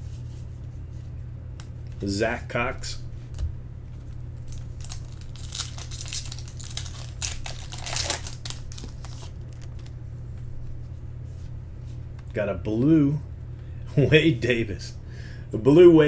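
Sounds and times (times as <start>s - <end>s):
foil wrapper tearing and crinkling: 4.4s - 9.9s.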